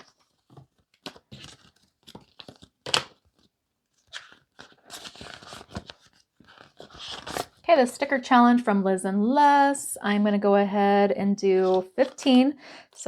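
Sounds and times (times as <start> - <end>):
banknotes rustling: 0.0 - 7.6.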